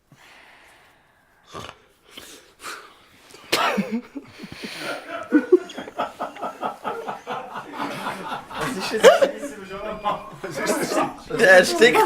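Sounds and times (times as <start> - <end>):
people laughing: 3.8 - 12.0.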